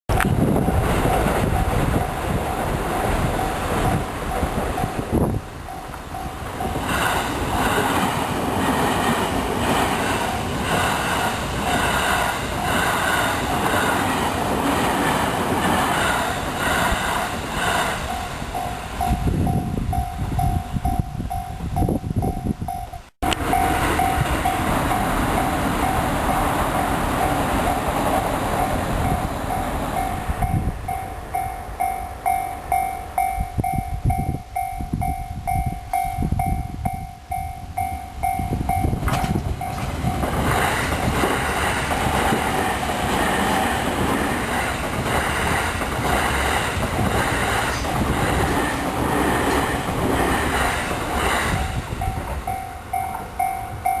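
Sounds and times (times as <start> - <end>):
train wheels clattering on rail joints: 0.1 - 21.0, 38.3 - 54.0
level crossing warning bell: 0.6 - 8.1, 9.0 - 14.8, 17.4 - 40.6, 51.2 - 54.0.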